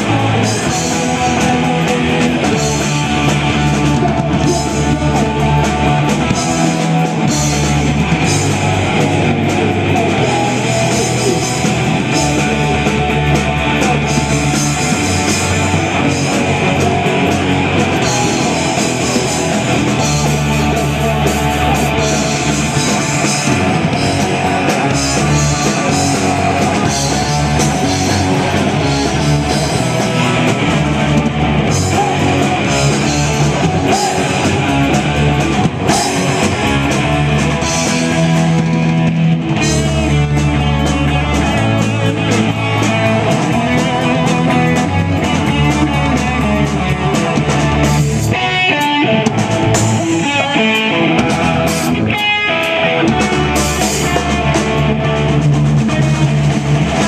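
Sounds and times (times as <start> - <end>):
drum kit: 0.0 - 57.0
electric guitar: 0.0 - 57.0.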